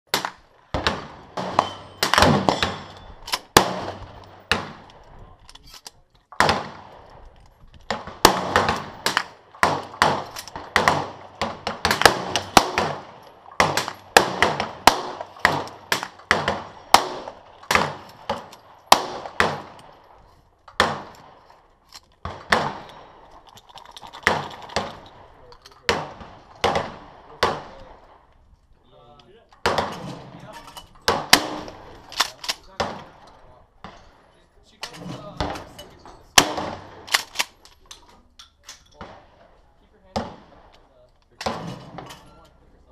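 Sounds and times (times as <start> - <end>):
shotguns firing with echo: 0.1 - 5.2, 6.3 - 20.1, 20.7 - 21.5, 22.2 - 23.4, 24.2 - 28.3, 29.6 - 30.4, 31.0 - 37.6, 39.0 - 40.8.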